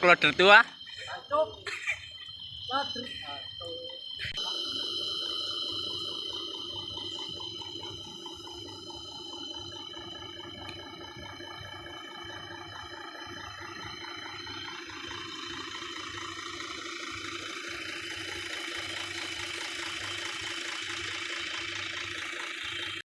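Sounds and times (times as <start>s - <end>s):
heavy diesel engine running: 0.0s - 23.0s
high whine: 0.0s - 23.0s.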